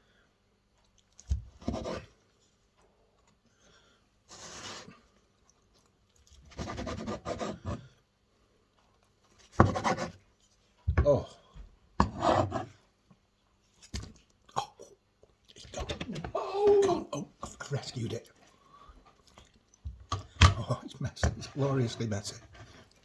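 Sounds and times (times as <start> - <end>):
pie crust rubbing and scraping: 1.5 - 2.2, 4.3 - 5.0, 6.3 - 7.9, 9.4 - 10.2, 12.0 - 12.8, 21.2 - 23.0.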